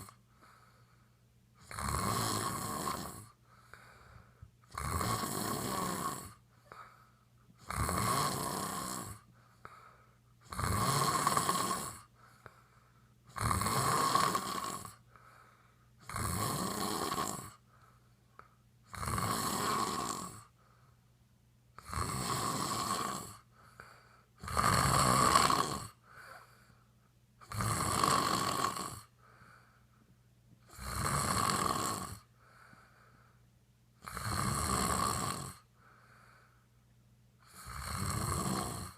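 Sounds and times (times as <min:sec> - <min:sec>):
man snoring loudly: 0:00.0 - 0:00.2, 0:01.6 - 0:03.4, 0:04.7 - 0:06.4, 0:07.6 - 0:09.3, 0:10.4 - 0:12.1, 0:13.3 - 0:15.0, 0:16.0 - 0:17.6, 0:18.9 - 0:20.5, 0:21.8 - 0:23.5, 0:24.4 - 0:26.5, 0:27.4 - 0:29.1, 0:30.6 - 0:32.3, 0:34.0 - 0:35.7, 0:37.4 - 0:38.9.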